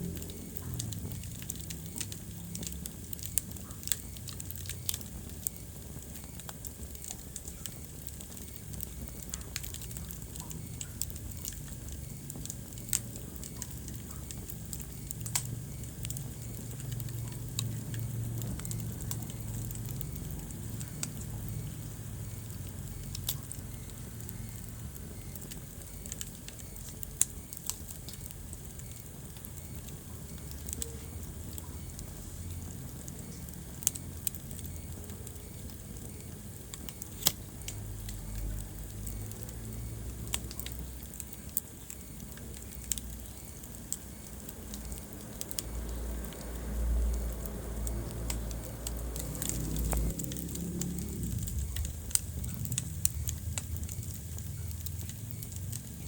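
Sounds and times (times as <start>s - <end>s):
wood fire crackling and popping: 0.0s - 56.0s
low rumble: 46.5s - 55.3s.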